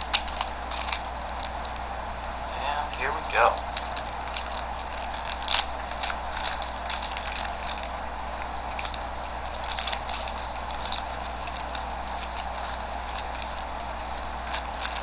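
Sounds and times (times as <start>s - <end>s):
wrapper crinkling and tearing: 0.0s - 1.8s, 3.6s - 15.0s.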